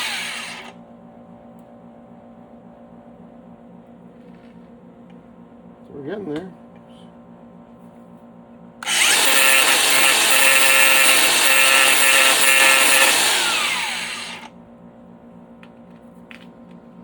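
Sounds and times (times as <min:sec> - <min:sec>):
power grinder grinding plastic: 0:00.0 - 0:00.7, 0:08.8 - 0:14.5.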